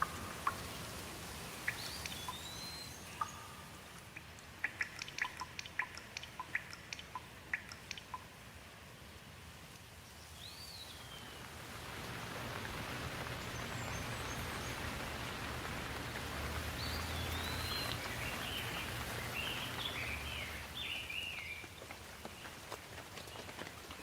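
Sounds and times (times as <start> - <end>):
bird chirping calls: 0.0 - 0.9, 1.5 - 4.0, 4.6 - 8.3, 13.2 - 22.6
steady rain: 0.0 - 24.0.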